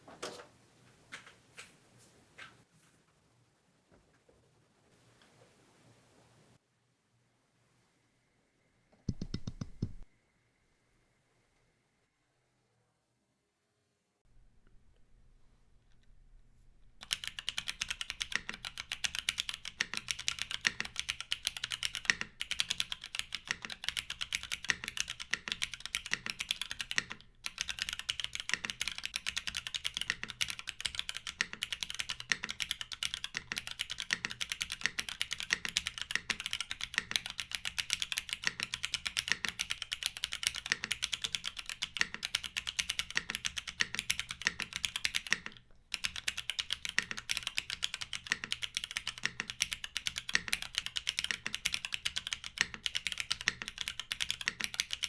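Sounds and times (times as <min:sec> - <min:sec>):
mechanical keyboard typing: 0:09.1 - 0:10.0, 0:17.0 - 0:55.0.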